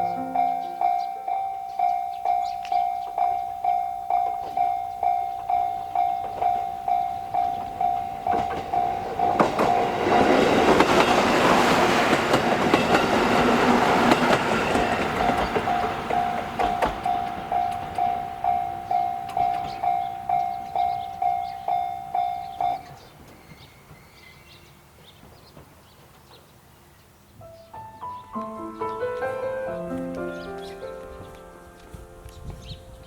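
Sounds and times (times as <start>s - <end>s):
level crossing bell dinging: 0.0s - 10.5s, 15.2s - 23.0s
diesel railcar passing: 0.0s - 33.0s.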